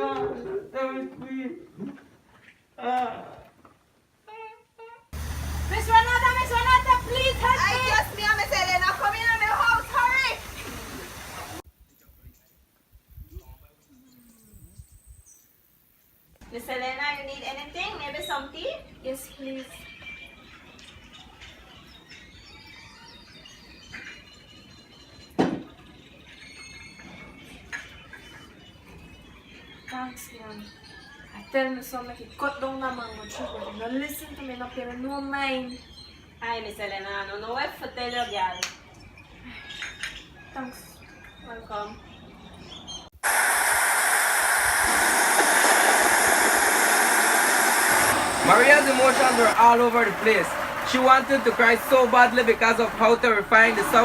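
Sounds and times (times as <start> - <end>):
faint bird chirps: 11.8 - 16.2, 18.1 - 36.7
hurricane wind rushing: 43.2 - 54.0.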